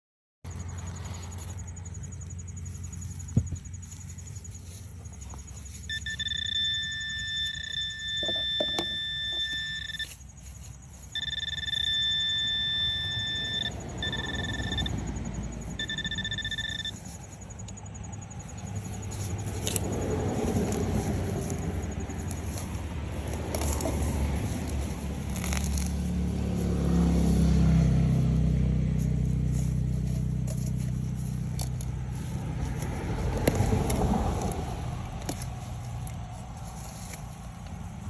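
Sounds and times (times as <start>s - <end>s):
metal detector high-pitched tone: 0.5s - 26.1s
short beeps: 5.4s - 10.4s, 11.0s - 18.7s.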